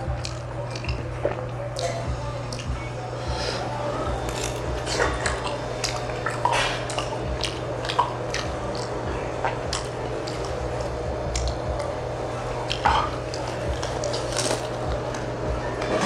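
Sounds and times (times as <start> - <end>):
wet chewing: 0.0 - 15.4
steady low hum: 0.0 - 16.0
utensils clicking against dishes: 4.2 - 8.9, 12.7 - 15.2.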